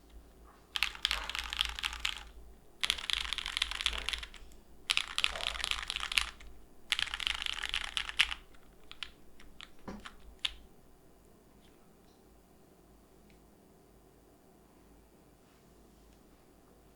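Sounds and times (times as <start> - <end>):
mechanical keyboard typing: 0.8 - 10.6.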